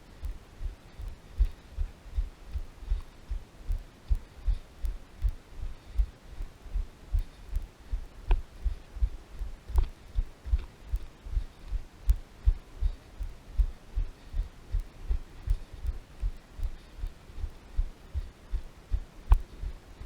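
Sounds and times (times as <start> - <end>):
footsteps on trail: 6.8 - 13.0.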